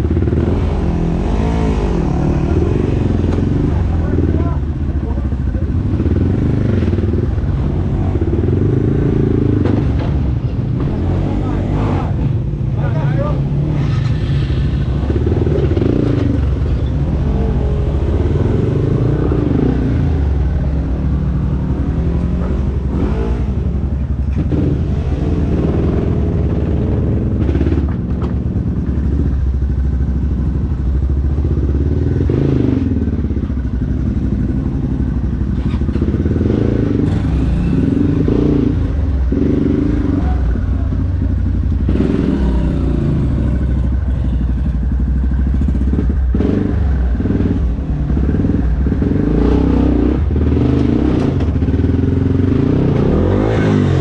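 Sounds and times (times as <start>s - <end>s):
dirt bike engine revving: 0.1s - 4.6s, 5.8s - 28.0s, 34.5s - 41.0s, 41.7s - 44.8s, 45.6s - 54.0s
clatter and knocks: 27.6s - 29.0s.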